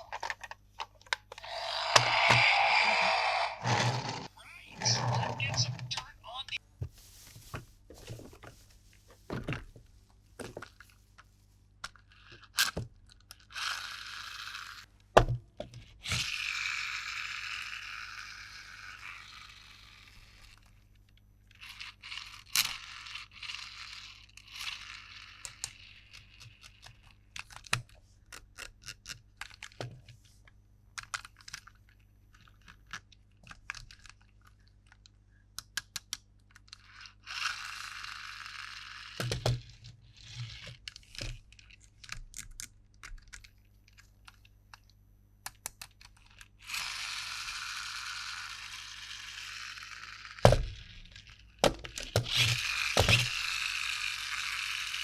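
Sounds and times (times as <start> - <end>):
plastic toy pieces clicking: 32.4 - 39.6.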